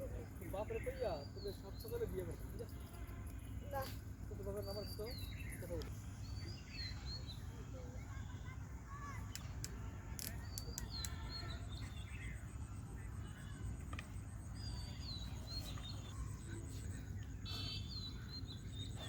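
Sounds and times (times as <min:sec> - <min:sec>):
birds chirping and whistling: 0:00.0 - 0:02.7, 0:03.5 - 0:07.7, 0:10.2 - 0:12.5, 0:14.2 - 0:19.0
sharp clicks: 0:09.3 - 0:11.2.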